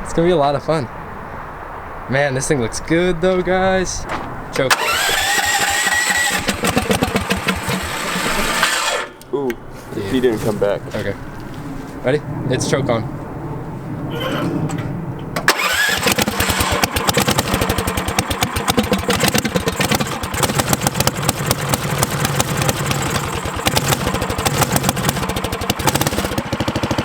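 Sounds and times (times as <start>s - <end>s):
small engine starting and running: 4.7s - 9.2s, 15.5s - 27.0s.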